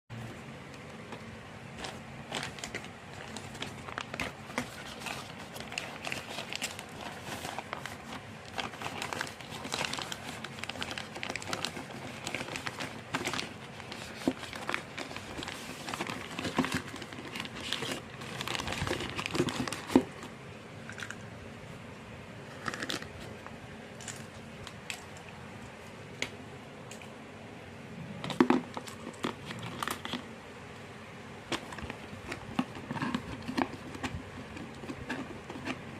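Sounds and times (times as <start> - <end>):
plastic packaging crinkling: 1.0 - 21.1, 28.3 - 30.4, 31.4 - 35.9.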